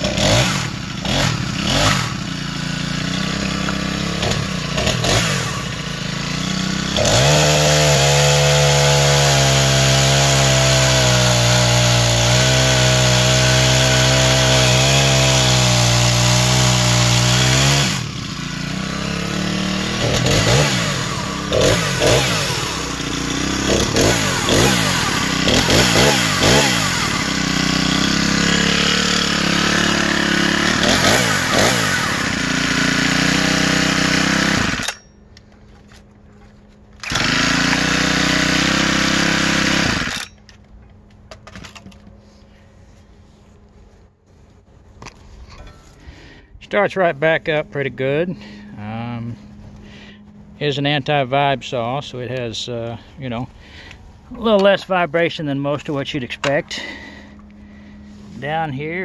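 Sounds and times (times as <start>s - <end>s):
chainsaw engine revving: 0.0s - 36.1s, 37.0s - 40.6s, 45.9s - 59.0s
chainsaw cutting wood: 0.0s - 42.6s, 54.6s - 59.0s.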